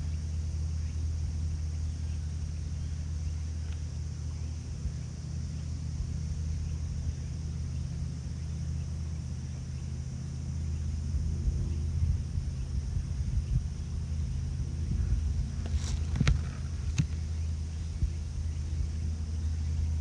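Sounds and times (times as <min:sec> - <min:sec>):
strong wind buffeting microphone: 0:11.2 - 0:20.0.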